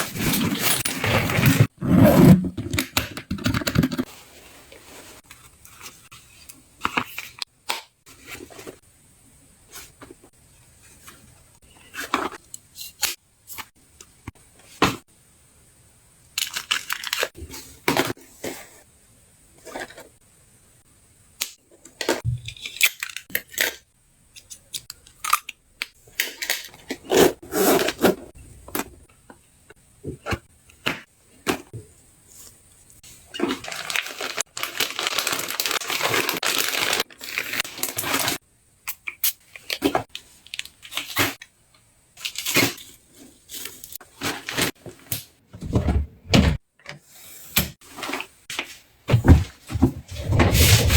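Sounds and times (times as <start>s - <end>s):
plastic packaging crinkling: 33.4s - 38.4s.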